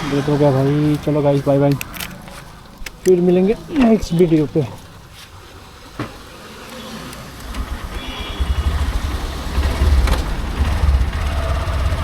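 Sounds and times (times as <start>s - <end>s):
motorcycle engine rumbling: 0.0s - 12.0s.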